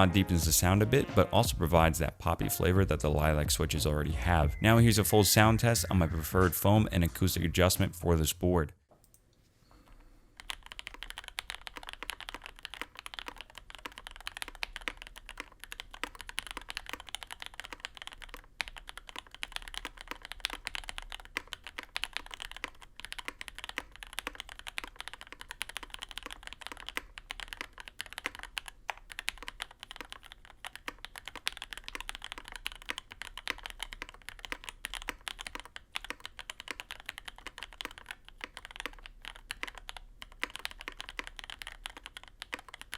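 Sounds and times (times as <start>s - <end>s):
fast typing on mechanical keyboard: 10.4s - 42.9s.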